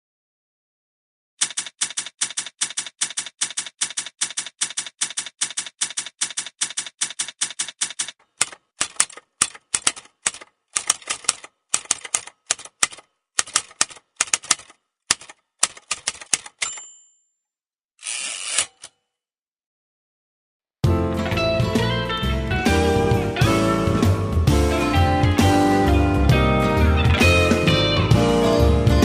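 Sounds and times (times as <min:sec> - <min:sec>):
typewriter keys striking: 0:01.4 - 0:16.8.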